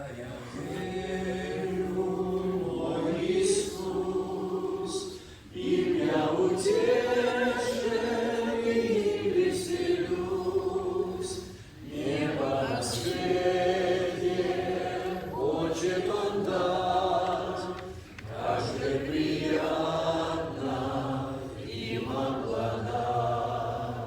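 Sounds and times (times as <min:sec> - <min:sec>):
congregation singing a hymn: 0:00.0 - 0:24.0.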